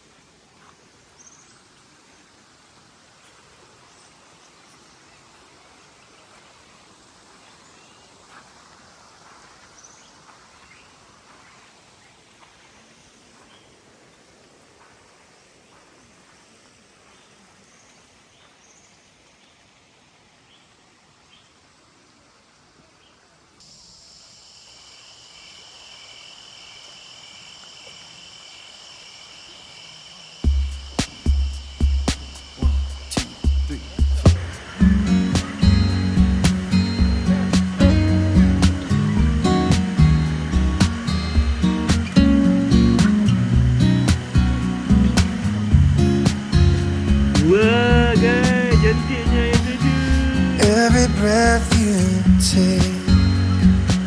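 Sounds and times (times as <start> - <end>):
outdoor background hiss: 0.0 - 54.0
faint bird chirps: 0.5 - 2.4, 9.2 - 14.3, 22.8 - 43.6
insects chorus shrill tones: 23.6 - 54.0.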